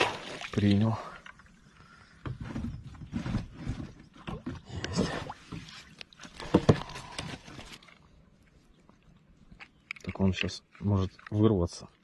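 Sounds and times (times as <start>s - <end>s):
water splashing: 0.0s - 1.6s.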